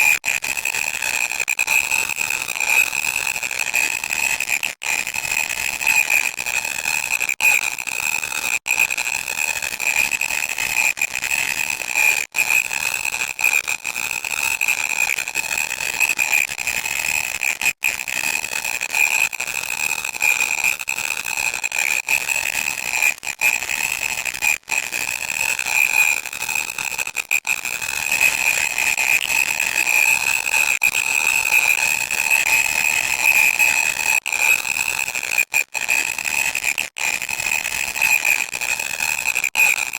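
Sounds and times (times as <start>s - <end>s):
harsh electronic static: 35.4s - 39.9s.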